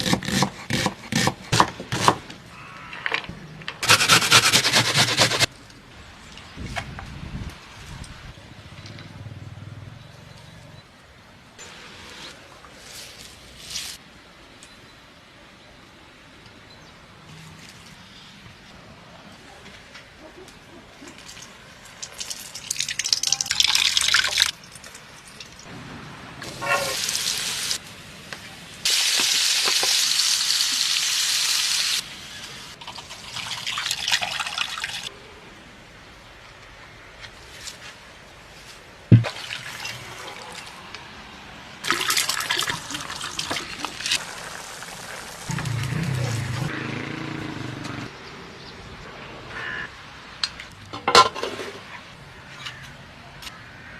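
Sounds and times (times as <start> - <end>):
food frying in hot oil: 42.8 - 46.2.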